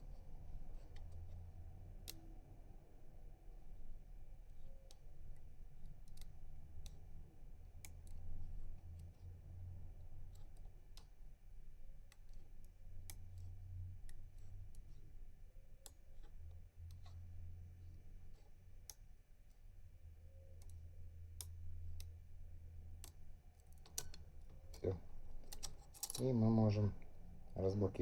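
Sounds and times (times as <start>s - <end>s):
low hum: 0.0s - 28.0s
lock pick clicking on pins: 2.0s - 2.4s, 4.5s - 9.1s, 10.0s - 19.6s, 20.3s - 27.2s.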